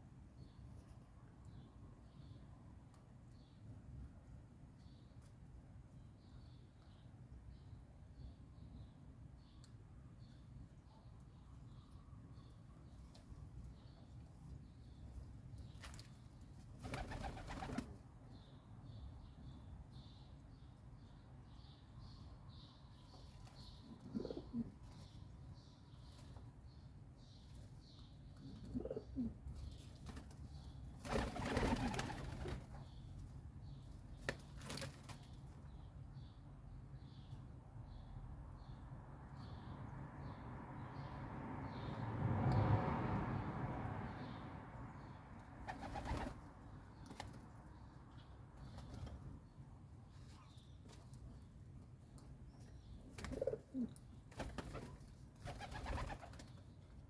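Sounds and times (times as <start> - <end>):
sparrows chirping: 0.3 - 3.9, 4.8 - 42.0, 44.1 - 57.0
pigeons cooing: 24.0 - 24.8, 28.6 - 29.4
wings flapping: 31.0 - 32.6, 45.7 - 46.4, 54.3 - 56.5.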